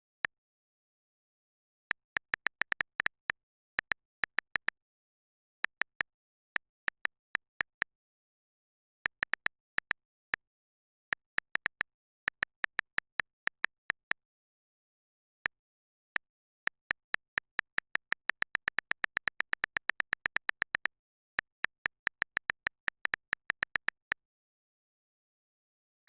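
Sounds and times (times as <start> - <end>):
phone keyboard key clicks: 1.9 - 4.8, 8.7 - 14.1, 15.2 - 24.1.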